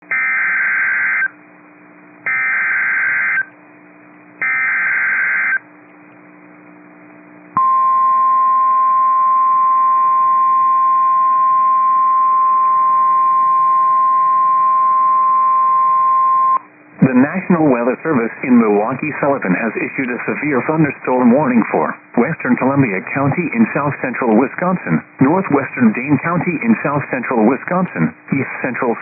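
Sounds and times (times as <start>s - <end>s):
steady warning alarm tone: 0.1s - 1.3s, 2.3s - 3.5s, 4.4s - 5.6s.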